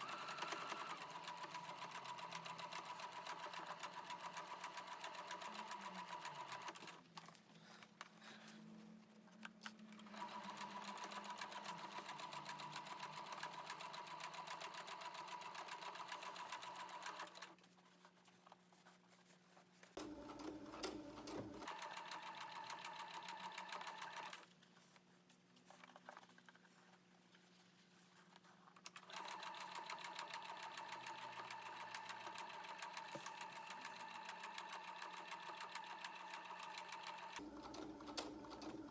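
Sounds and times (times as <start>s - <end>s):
sewing machine stitching canvas: 0.0s - 7.0s, 9.7s - 17.6s, 20.0s - 24.5s, 28.8s - 38.9s.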